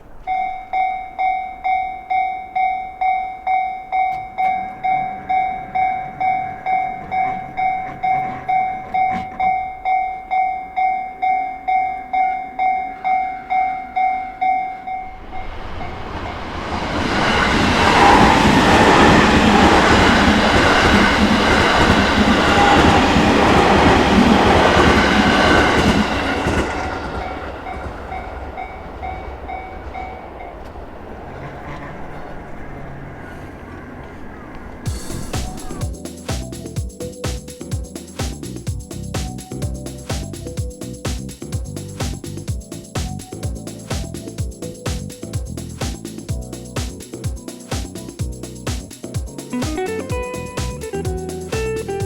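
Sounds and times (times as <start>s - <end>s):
train passing: 0.0s - 52.0s
level crossing warning bell: 0.1s - 15.6s, 17.3s - 32.9s.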